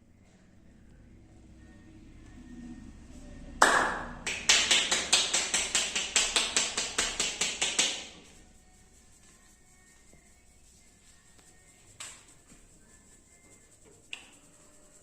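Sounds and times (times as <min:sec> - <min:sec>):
hand slaps: 0:03.6 - 0:08.2.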